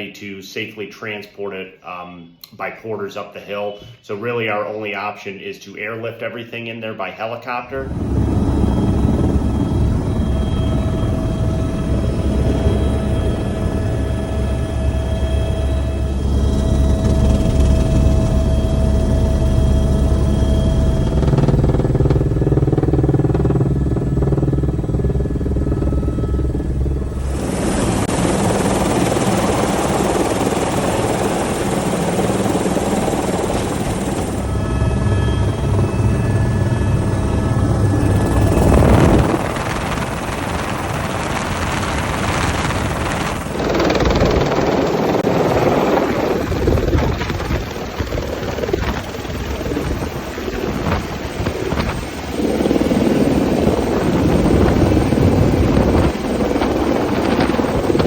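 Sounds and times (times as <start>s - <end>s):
helicopter rotor beat: 7.8s - 58.0s
helicopter rushing wash: 7.8s - 58.0s.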